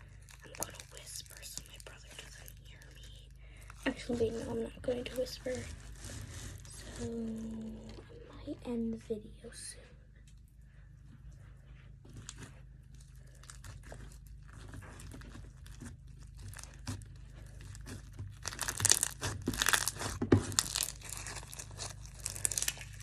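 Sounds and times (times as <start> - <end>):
slime squished by hand: 0.0 - 3.0, 3.6 - 8.0, 12.1 - 23.0.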